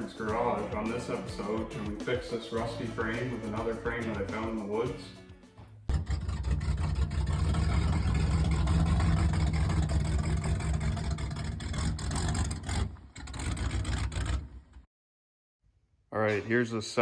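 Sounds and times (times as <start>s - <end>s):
vehicle engine rumbling: 5.9s - 14.8s.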